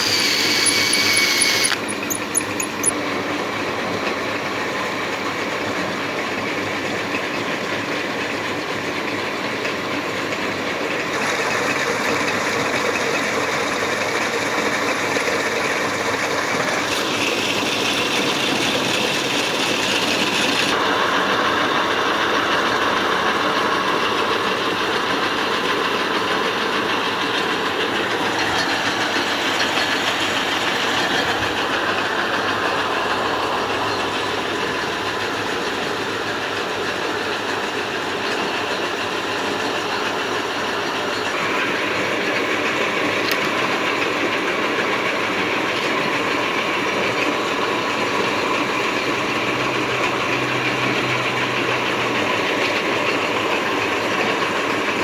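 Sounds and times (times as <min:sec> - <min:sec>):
concrete mixer running: 0:00.0 - 0:03.0, 0:15.2 - 0:22.3.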